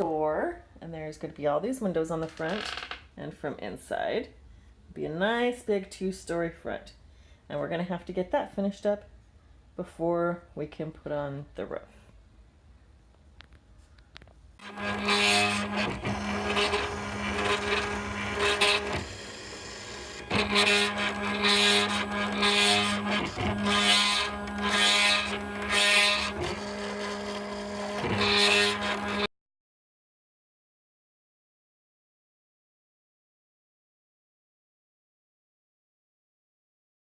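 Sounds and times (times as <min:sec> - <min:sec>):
rasping cutting bursts: 0:14.6 - 0:29.3
small electric motor humming: 0:14.6 - 0:29.3.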